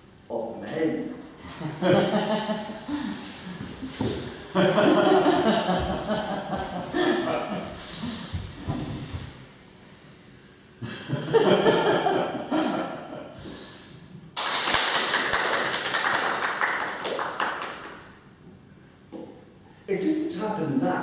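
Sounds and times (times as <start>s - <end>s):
people laughing: 1.5s - 8.3s, 10.8s - 13.5s
applause: 14.4s - 18.2s.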